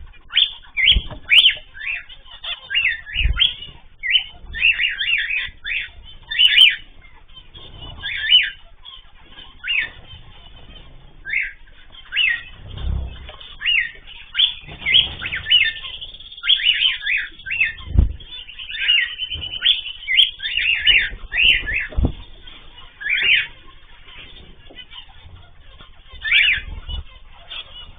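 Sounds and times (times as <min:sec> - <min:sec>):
cage birds chirping: 0:00.0 - 0:27.9
low thumps: 0:00.9 - 0:01.4, 0:12.3 - 0:16.4, 0:17.4 - 0:18.5, 0:19.2 - 0:22.7.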